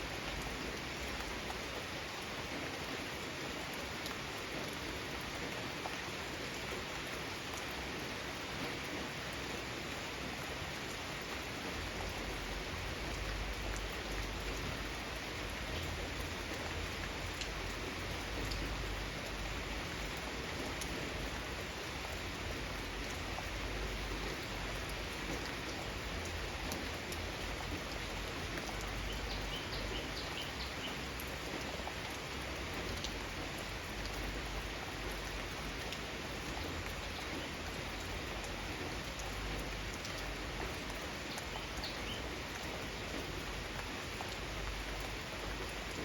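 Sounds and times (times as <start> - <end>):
raindrops ticking on surfaces: 0.0 - 46.0
steady rain: 0.0 - 46.0.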